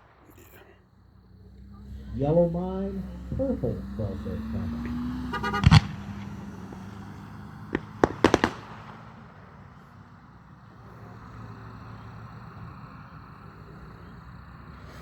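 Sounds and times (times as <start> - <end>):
fireworks bangs: 0.0 - 0.8, 2.2 - 9.8
low rumble: 0.0 - 5.2.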